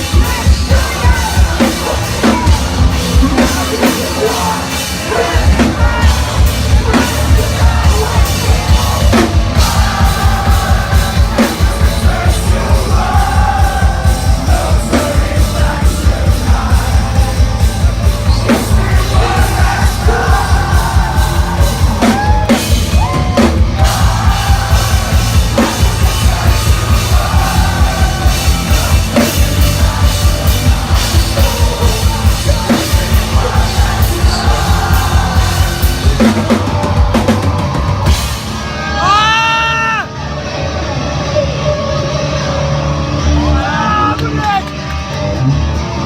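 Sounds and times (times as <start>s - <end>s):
distorted guitars: 0.0s - 46.0s
fast kick drum beat: 5.5s - 38.3s
shouted vocals: 18.5s - 40.2s.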